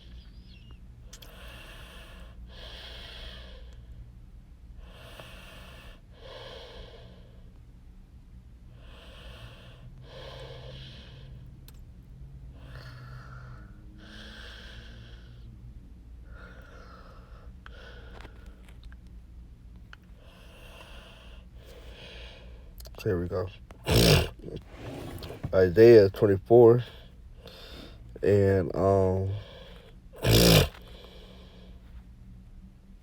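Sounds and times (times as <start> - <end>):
low electrical hum: 0.0 - 33.0
man breathing: 1.2 - 4.0, 4.8 - 7.6, 8.8 - 11.5, 12.5 - 15.6, 16.2 - 18.8, 20.2 - 28.4, 29.2 - 32.0.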